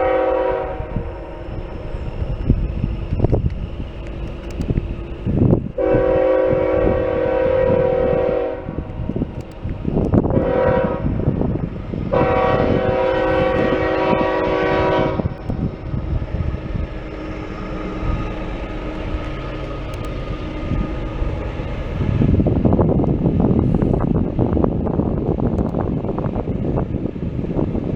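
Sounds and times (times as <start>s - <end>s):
locomotive air horn blasts: 0.0s - 2.1s, 5.2s - 9.2s, 10.0s - 11.5s, 12.1s - 22.3s
train rumbling past: 0.0s - 27.9s.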